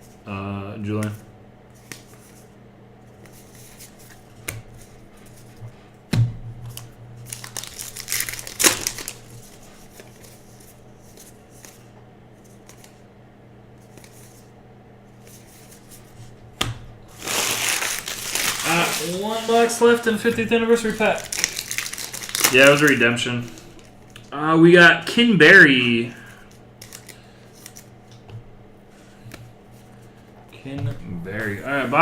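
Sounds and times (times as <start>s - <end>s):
wrappers crinkling and tearing: 7.3s - 10.2s, 17.1s - 20.1s, 20.7s - 24.0s, 26.8s - 27.9s.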